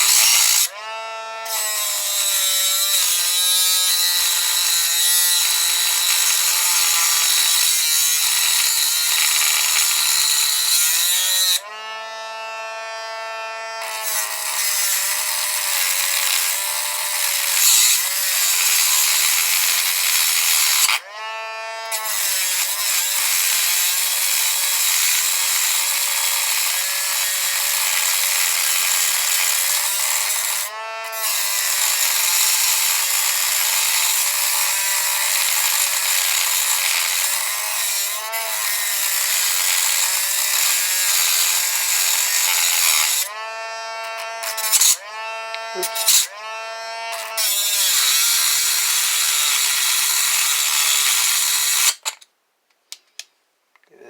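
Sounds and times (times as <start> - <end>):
power tool motor whine: 0.0 - 52.2.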